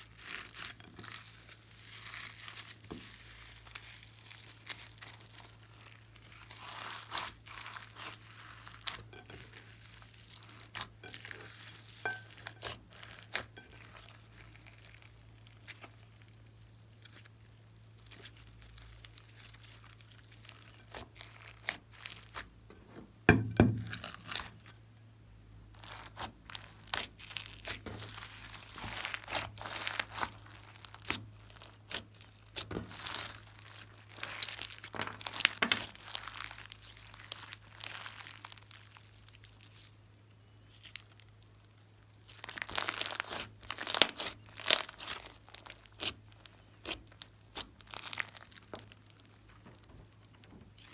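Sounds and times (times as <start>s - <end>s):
thump: 22.9s - 23.9s.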